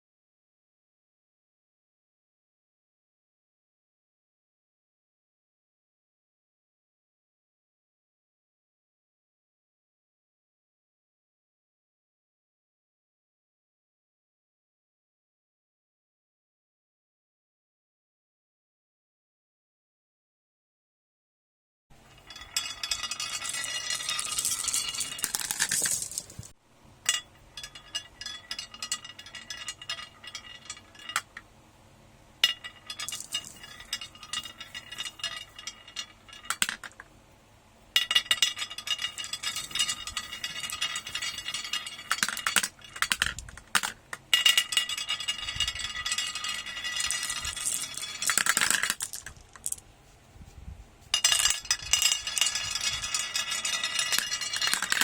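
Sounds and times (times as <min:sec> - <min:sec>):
marbles clattering down a track: 0:22.2 - 0:26.6, 0:32.5 - 0:37.1, 0:38.0 - 0:49.8, 0:51.2 - 0:55.0.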